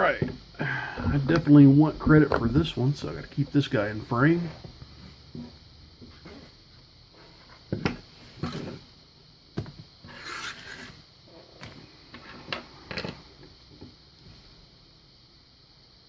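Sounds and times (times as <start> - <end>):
short scraping rub: 10.1 - 11.0.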